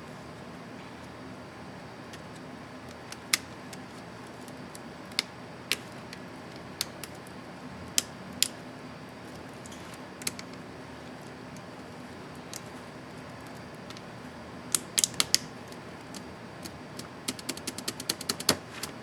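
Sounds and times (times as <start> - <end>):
low background hum: 0.0 - 19.0.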